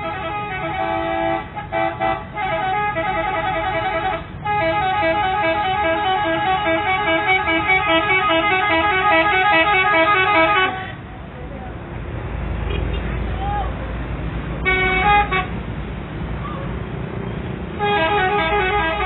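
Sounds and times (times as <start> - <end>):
multi-tone musical air horn: 0.0 - 10.9, 14.6 - 15.5, 17.8 - 19.0.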